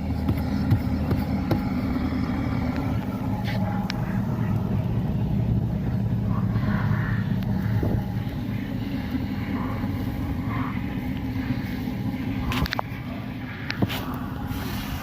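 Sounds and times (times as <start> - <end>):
wheel hub rumbling: 0.0 - 15.0.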